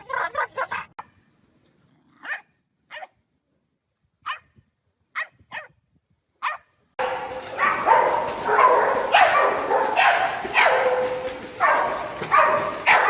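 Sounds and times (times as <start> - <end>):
dog barking: 2.2 - 3.1, 4.2 - 4.5, 5.2 - 5.7, 6.4 - 13.0.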